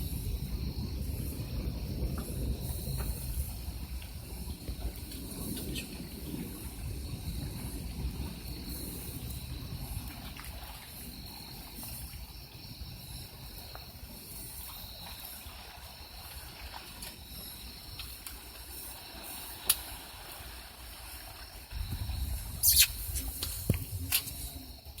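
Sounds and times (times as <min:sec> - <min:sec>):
water lapping around boat: 0:00.0 - 0:25.0.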